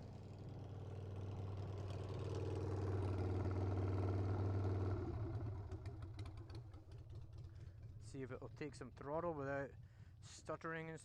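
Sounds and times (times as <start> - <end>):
motorcycle engine running: 0.0 - 8.2.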